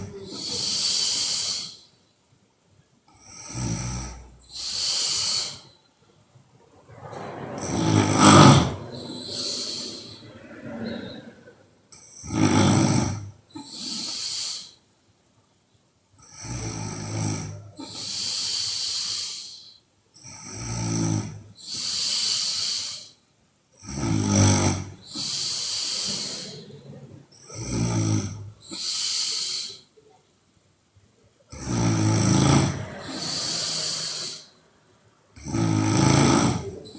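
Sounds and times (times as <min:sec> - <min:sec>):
breathy hiss: 0:00.0 - 0:02.2, 0:03.1 - 0:06.0, 0:06.6 - 0:14.9, 0:16.2 - 0:30.2, 0:31.4 - 0:36.9
woman snoring loudly: 0:07.6 - 0:10.3, 0:12.0 - 0:14.7, 0:16.2 - 0:19.5, 0:20.2 - 0:23.1, 0:23.8 - 0:26.6, 0:27.4 - 0:29.8, 0:31.5 - 0:34.6, 0:35.4 - 0:36.9.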